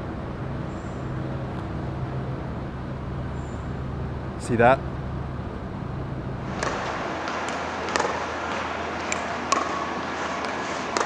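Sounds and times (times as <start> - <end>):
ball bouncing on court: 6.5 - 11.0.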